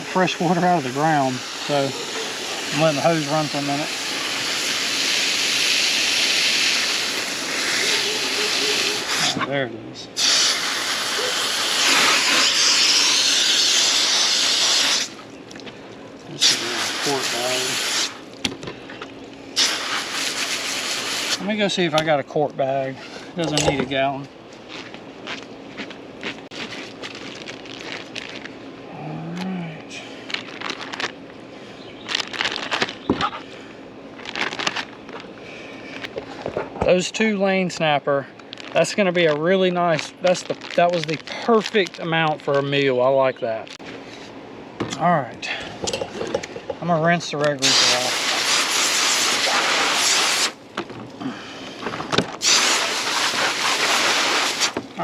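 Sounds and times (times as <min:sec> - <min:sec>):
water rushing from garden hose: 0:00.0 - 0:09.4, 0:10.2 - 0:15.3, 0:16.2 - 0:18.4, 0:19.6 - 0:21.7, 0:47.6 - 0:50.6, 0:52.4 - 0:54.8
faint steady hum: 0:00.0 - 0:55.0
plastic bags rustling: 0:26.5 - 0:28.6, 0:30.2 - 0:33.5, 0:34.1 - 0:36.6, 0:38.4 - 0:43.1.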